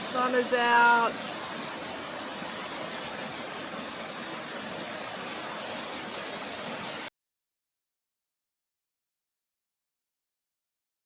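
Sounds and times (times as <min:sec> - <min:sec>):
creek flowing over rocks: 0:00.0 - 0:07.1.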